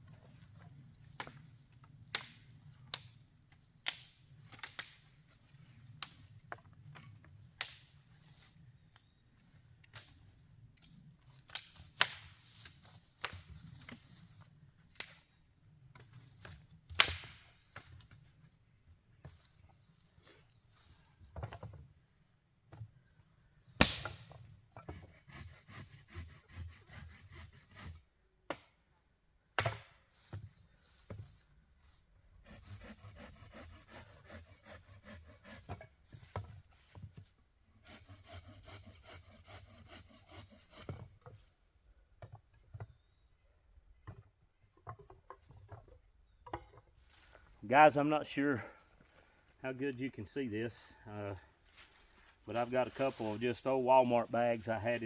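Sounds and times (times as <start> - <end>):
hand saw cutting wood: 24.8 - 28.1, 32.4 - 37.2, 37.8 - 41.2, 52.5 - 55.0.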